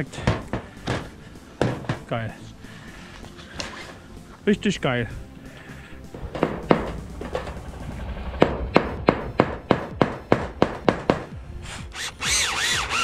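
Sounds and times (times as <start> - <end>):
hammer striking: 0.2 - 2.1, 6.2 - 7.7, 8.4 - 11.4.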